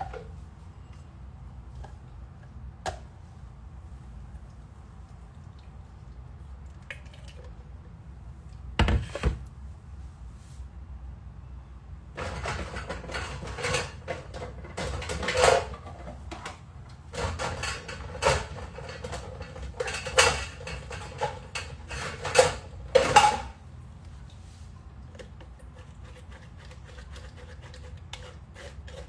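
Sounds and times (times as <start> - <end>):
kitchen utensils clattering: 12.2 - 23.6.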